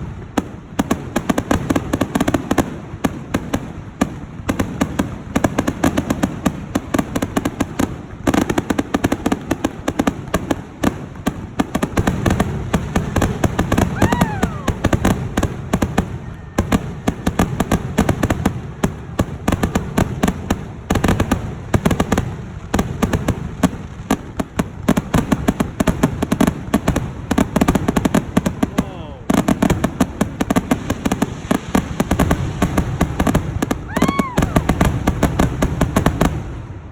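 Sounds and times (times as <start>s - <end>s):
fireworks crackling and banging: 0.0s - 36.9s
firework whistle: 12.8s - 19.2s, 30.9s - 35.6s.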